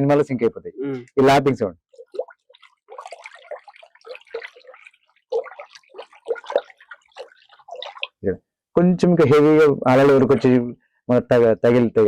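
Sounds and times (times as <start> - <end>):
water splashing in a bucket: 1.9 - 8.2.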